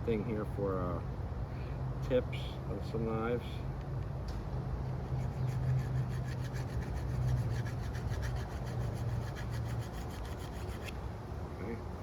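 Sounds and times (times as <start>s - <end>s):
knife scraping on sharpening stone: 5.1s - 11.0s.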